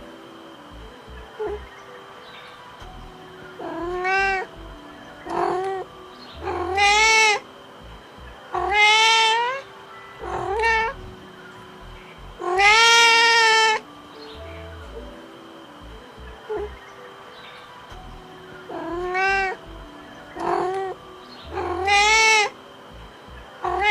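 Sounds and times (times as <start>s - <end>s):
cat meowing: 6.4s - 7.4s, 8.6s - 9.6s, 10.2s - 11.0s, 12.4s - 13.8s, 18.7s - 19.6s, 20.4s - 22.5s, 23.6s - 23.9s.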